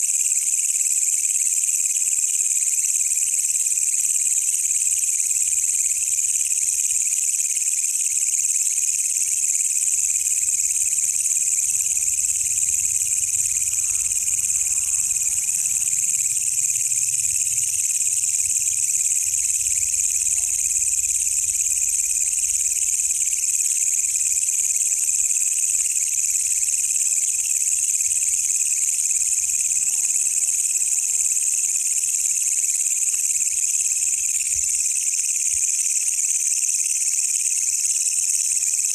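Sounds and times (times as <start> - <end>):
katydid buzzing trill: 9.3 - 25.3.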